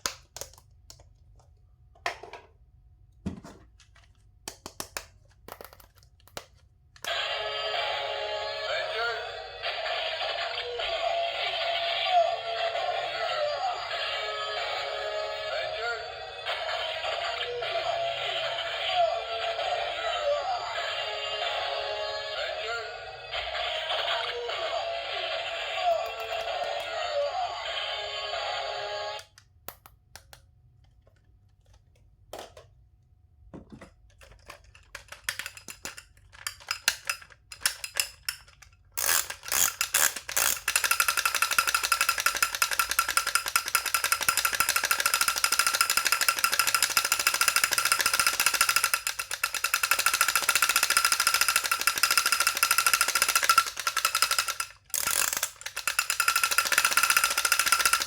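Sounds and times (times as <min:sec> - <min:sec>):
toy motor rattling buzz: 0:39.0 - 0:58.0.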